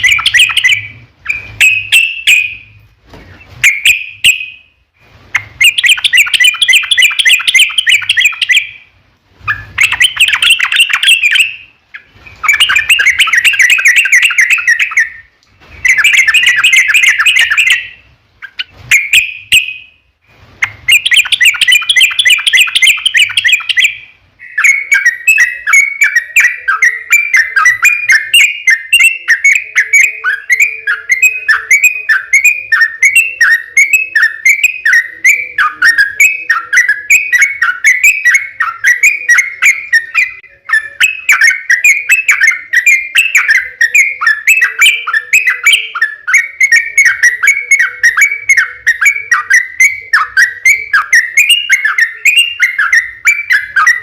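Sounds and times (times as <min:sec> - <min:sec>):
bird chirps sliding down in pitch: 0:00.0 - 0:02.8, 0:09.5 - 0:20.0
bird chattering song: 0:00.0 - 0:04.7, 0:05.3 - 0:20.0, 0:20.6 - 0:54.0.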